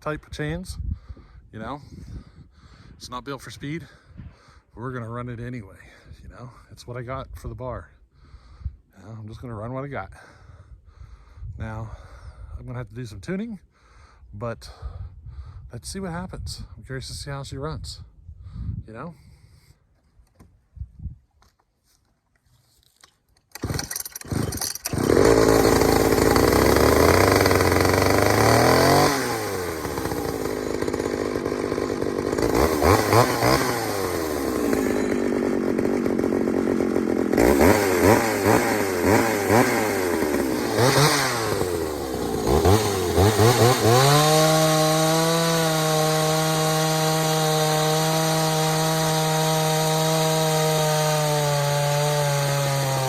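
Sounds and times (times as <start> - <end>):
chainsaw pull cord starts: 23.4 - 53.0
chainsaw engine revving and idling: 23.6 - 53.0.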